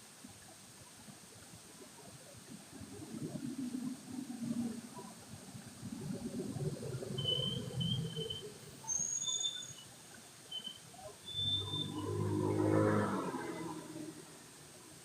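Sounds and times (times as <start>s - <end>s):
vehicle engine approaching: 11.4s - 14.8s.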